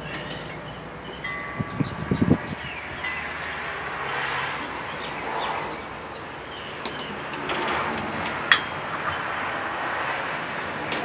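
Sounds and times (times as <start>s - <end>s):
sharp clicks and rattles: 0.0s - 9.0s, 10.8s - 11.0s
birds chirping: 0.0s - 11.0s
wind on microphone: 1.3s - 6.1s.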